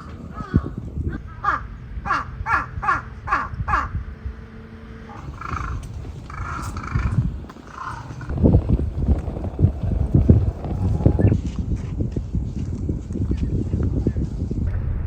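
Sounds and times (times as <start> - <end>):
crow cawing: 0.0 - 4.0, 5.0 - 8.4.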